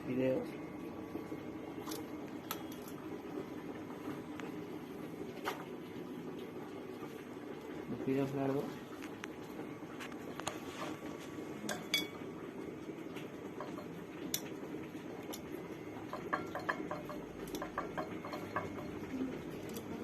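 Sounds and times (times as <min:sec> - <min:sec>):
utensil clinking against bowl: 0:11.6 - 0:12.2, 0:13.6 - 0:14.5, 0:15.3 - 0:20.0.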